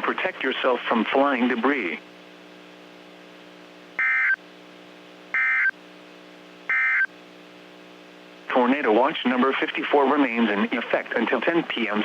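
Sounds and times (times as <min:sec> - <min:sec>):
steady low hum: 0:00.0 - 0:12.0
warbling digital data tones: 0:04.0 - 0:04.4.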